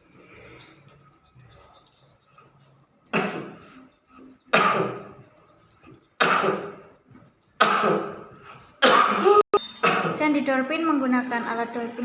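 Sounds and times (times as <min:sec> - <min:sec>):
person coughing: 0:03.1 - 0:03.6, 0:06.2 - 0:06.8, 0:07.6 - 0:10.2.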